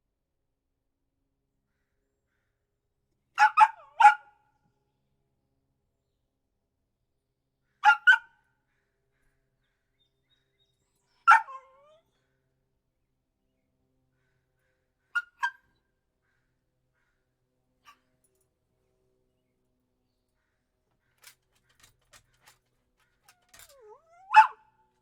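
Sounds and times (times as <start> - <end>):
puppy barking: 3.4 - 4.4, 7.8 - 8.3, 11.3 - 12.0, 15.2 - 15.6, 23.3 - 24.7
puppy whining: 21.2 - 24.6.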